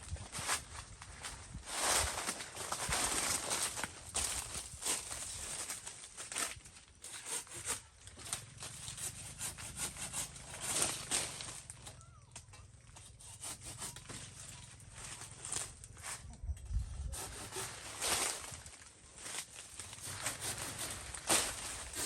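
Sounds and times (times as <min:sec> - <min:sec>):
scraping and rubbing strokes: 0:12.8 - 0:16.3, 0:19.2 - 0:22.0.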